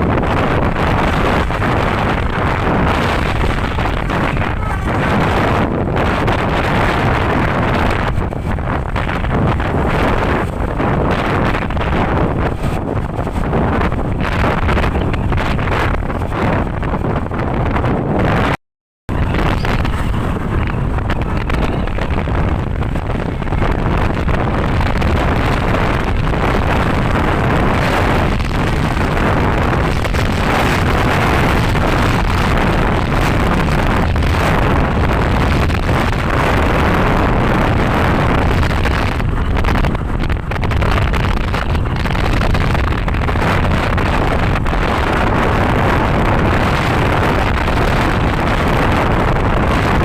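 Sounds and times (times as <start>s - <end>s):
moving vehicle on road: 0.0s - 50.0s
wind buffeting microphone: 0.0s - 50.0s.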